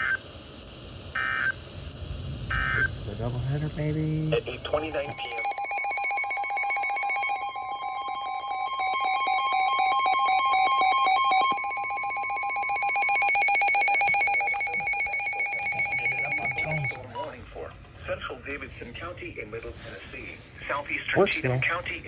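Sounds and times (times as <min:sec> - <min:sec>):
pulsing electronic alarm: 0:00.0 - 0:02.9, 0:04.7 - 0:17.3
steady warning tone: 0:00.0 - 0:17.4.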